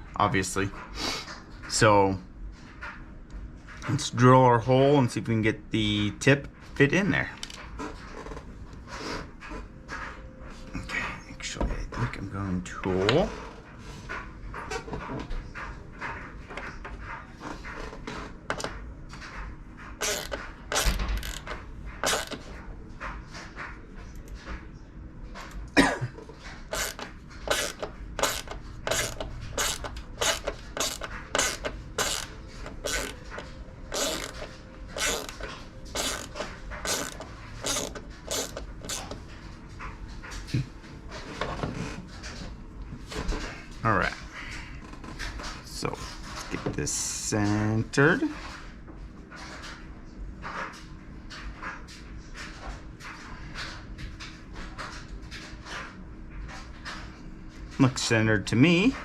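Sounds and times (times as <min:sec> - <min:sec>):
ratcheting tool clicks and creaks: 0:20.0 - 0:22.4, 0:26.7 - 0:39.2.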